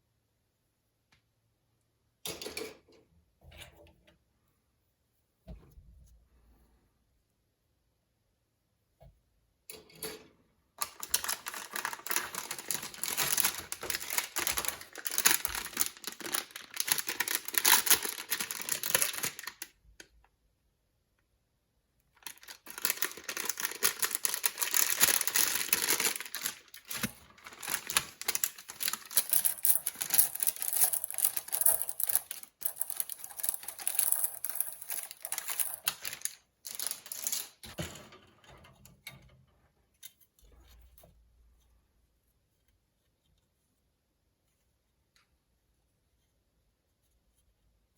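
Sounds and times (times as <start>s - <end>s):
plastic packaging crinkling: 10.9s - 19.8s, 22.2s - 37.7s.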